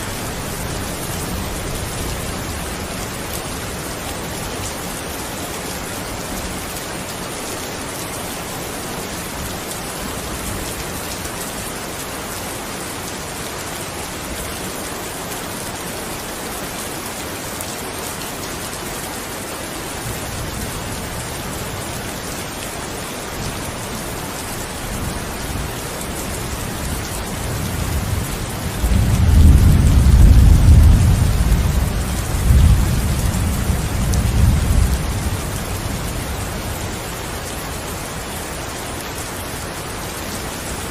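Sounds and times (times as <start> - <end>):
steady rain: 0.0 - 40.9
thunder rumble: 27.6 - 36.0.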